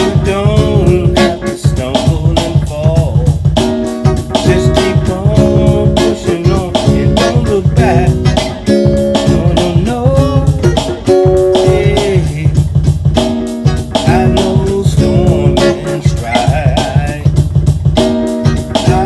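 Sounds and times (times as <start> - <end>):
bass and drums groove: 0.0 - 19.0
guitar bending notes: 0.0 - 19.0.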